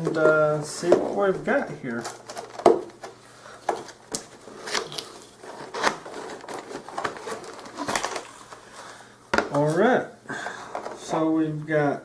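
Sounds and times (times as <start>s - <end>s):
cardboard and packaging rustling: 0.0s - 11.2s.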